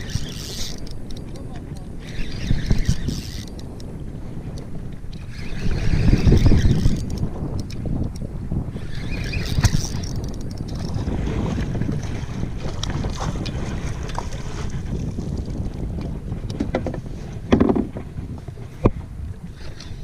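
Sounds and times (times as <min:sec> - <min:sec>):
wind buffeting microphone: 0:00.0 - 0:20.0
light clicks: 0:06.3 - 0:08.3.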